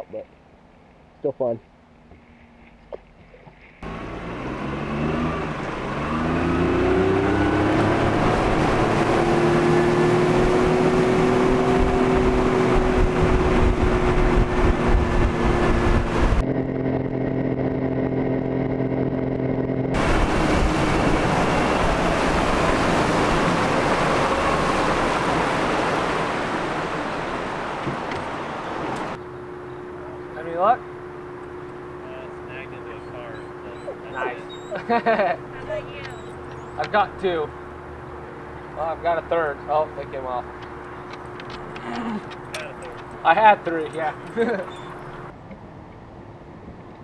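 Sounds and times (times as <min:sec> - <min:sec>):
boat motor running: 0:03.4 - 0:45.3
rushing wind and water: 0:04.0 - 0:16.4, 0:19.9 - 0:29.2.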